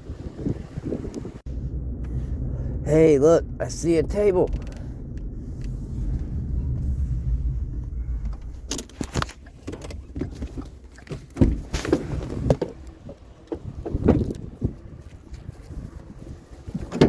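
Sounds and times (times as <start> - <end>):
vehicle engine rumble: 0.0 - 17.0
clunks knocks and rattles: 4.4 - 17.0.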